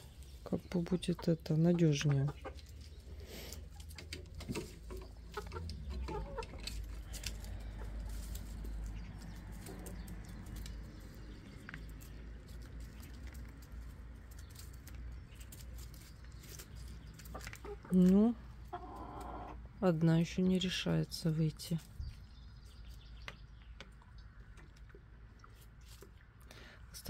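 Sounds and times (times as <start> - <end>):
hens scratching and pattering: 0.0 - 19.7, 21.3 - 26.5
chickens clucking: 0.0 - 21.0.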